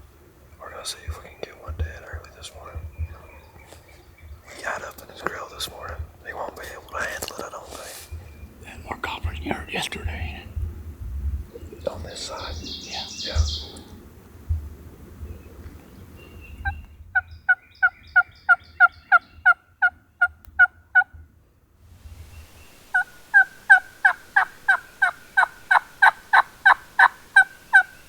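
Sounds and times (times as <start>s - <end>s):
turkey yelps: 22.9s - 28.0s.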